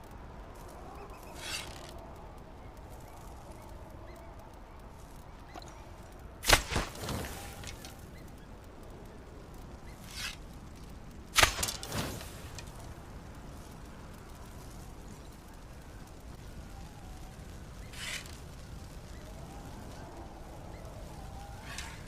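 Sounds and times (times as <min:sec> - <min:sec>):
bow string snapping: 0:09.5 - 0:12.8.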